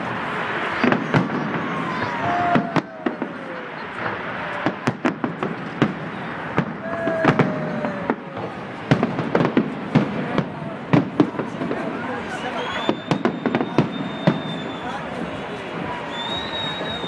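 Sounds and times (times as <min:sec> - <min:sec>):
fireworks bangs and cracks: 0:00.0 - 0:17.0
long falling whistle: 0:12.3 - 0:15.1, 0:15.9 - 0:17.0.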